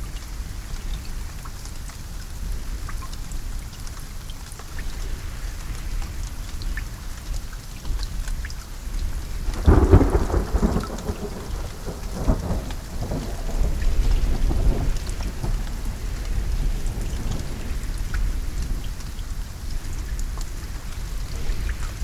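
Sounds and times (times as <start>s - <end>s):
raindrops ticking: 0.0s - 22.0s
steady rain falling: 0.0s - 22.0s
thunder rolling: 9.4s - 18.1s.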